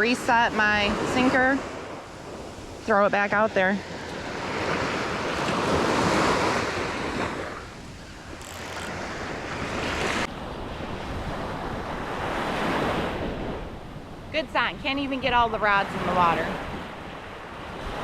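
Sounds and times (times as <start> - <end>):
ocean surf breaking: 0.0 - 18.0
wind buffeting microphone: 0.0 - 18.0.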